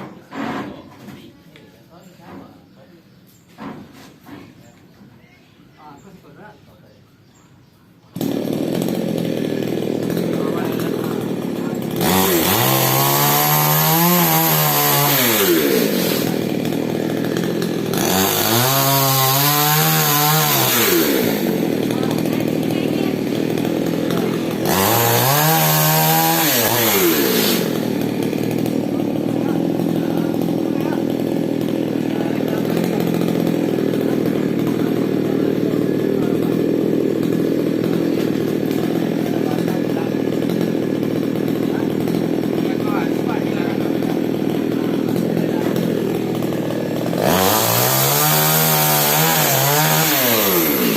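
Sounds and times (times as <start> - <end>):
chainsaw cutting wood: 0.0 - 1.1, 8.1 - 50.9
chainsaw engine revving: 8.1 - 50.9.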